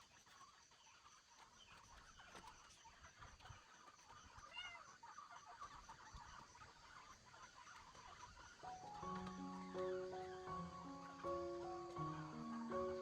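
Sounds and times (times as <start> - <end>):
insects pulsing: 0.0 - 13.0.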